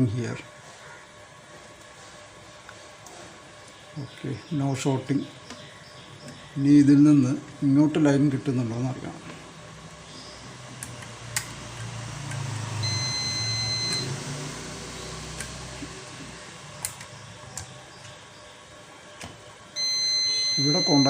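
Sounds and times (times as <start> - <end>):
test probes clicking: 5.4 - 6.5, 10.7 - 14.1, 14.9 - 18.3
multimeter continuity beep: 12.7 - 15.3, 19.8 - 21.0.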